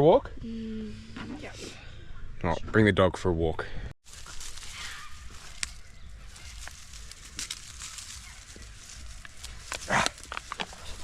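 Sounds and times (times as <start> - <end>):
rustle: 4.0 - 11.0
sticks and leaves crunching: 4.0 - 11.0.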